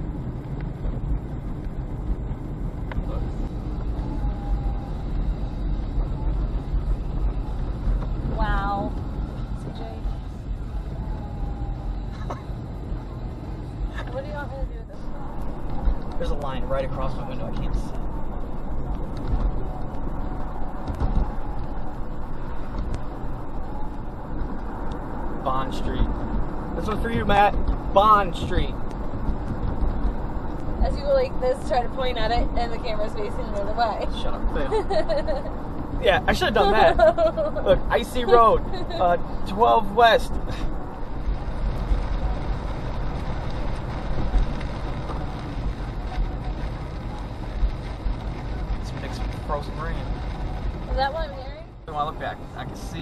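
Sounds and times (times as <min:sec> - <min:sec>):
car engine: 0:00.0 - 0:53.0
gusting wind noise: 0:00.0 - 0:53.0
road noise: 0:00.0 - 0:53.0.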